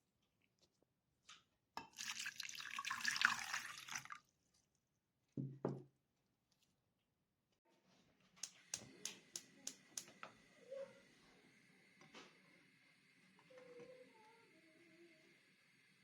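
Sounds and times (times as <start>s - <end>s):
water running: 1.9s - 4.2s.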